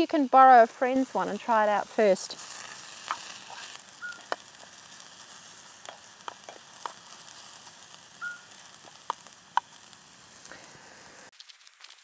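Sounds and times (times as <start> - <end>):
food sizzling in a pan: 0.0 - 12.0
sharp pops: 2.4 - 4.9, 5.8 - 10.6.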